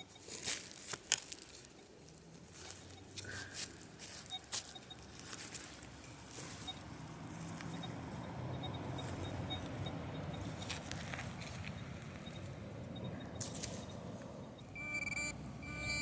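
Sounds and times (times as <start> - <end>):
short high-pitched beeps: 0.0 - 0.4, 4.1 - 5.1, 6.4 - 6.9, 7.6 - 10.8, 11.7 - 16.0
scraping and knocking in soil: 0.0 - 7.8, 13.4 - 14.3.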